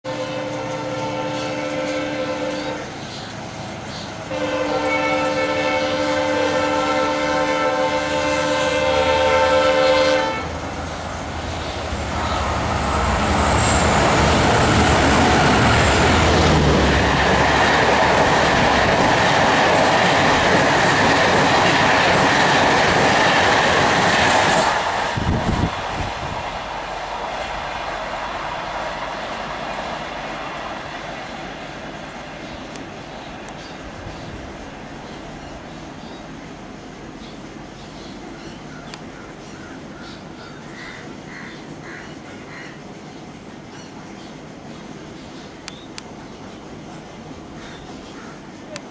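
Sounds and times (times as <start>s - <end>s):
train passing on rails: 0.0s - 48.9s
locomotive horn blast: 0.1s - 2.9s, 4.3s - 10.7s.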